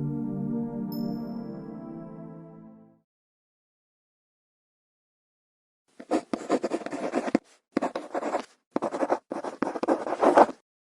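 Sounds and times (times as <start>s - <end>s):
scratching and rubbing: 6.0s - 10.6s.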